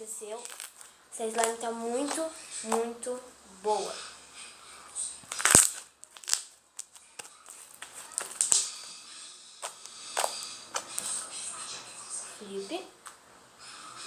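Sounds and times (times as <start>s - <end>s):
slime crackling: 0.0s - 11.7s
slime clicking and popping: 0.4s - 0.8s, 5.3s - 8.8s.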